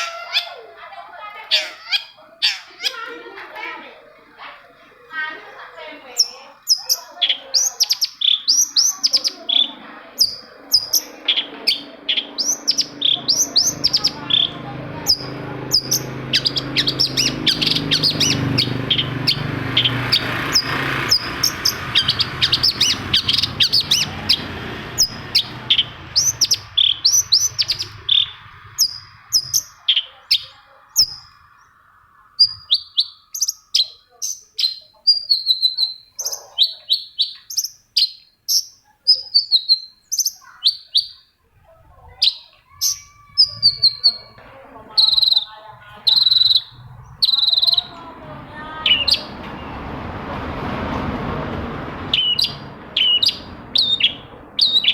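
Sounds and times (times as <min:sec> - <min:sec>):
shrike calling sharp notes: 0:00.0 - 0:00.9, 0:05.1 - 0:34.1, 0:52.0 - 0:54.9
low rumbling hum: 0:45.7 - 0:54.9.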